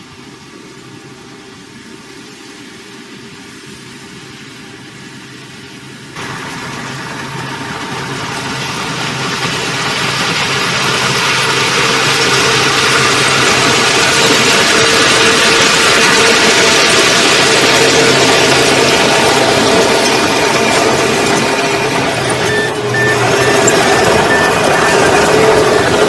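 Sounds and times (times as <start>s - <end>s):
heavy machine engine running: 6.0s - 26.0s.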